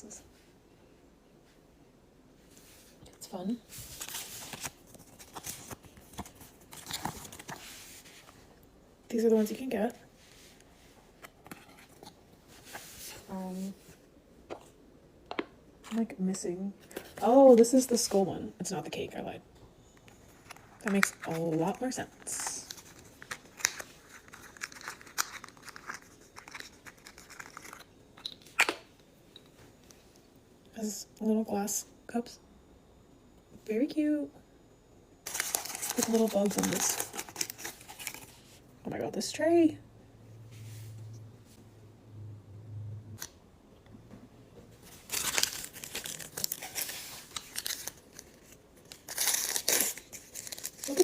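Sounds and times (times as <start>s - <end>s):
plastic packaging crinkling: 20.5s - 28.7s, 35.3s - 38.6s, 44.8s - 51.0s.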